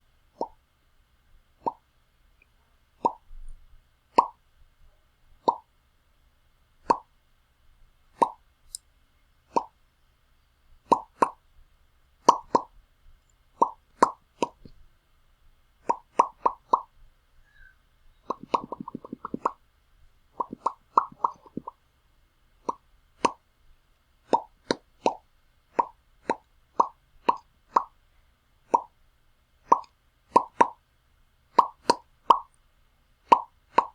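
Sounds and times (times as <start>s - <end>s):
lip pops: 3.0s - 3.5s, 4.2s - 4.4s, 5.4s - 5.7s, 6.8s - 7.1s, 9.5s - 9.8s, 10.9s - 11.4s, 12.2s - 12.7s, 13.6s - 14.8s, 15.8s - 16.9s, 18.2s - 19.6s, 20.4s - 21.8s, 22.6s - 23.4s, 24.3s - 28.0s, 28.7s - 28.9s, 29.7s - 30.8s, 31.6s - 32.6s, 33.3s - 33.9s.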